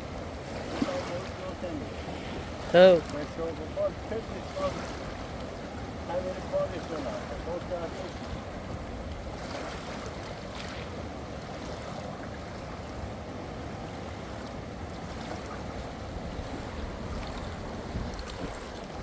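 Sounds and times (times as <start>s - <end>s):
waves washing: 0.0s - 19.0s
wind rumble on microphone: 7.2s - 19.0s
strong wind blowing: 16.0s - 19.0s.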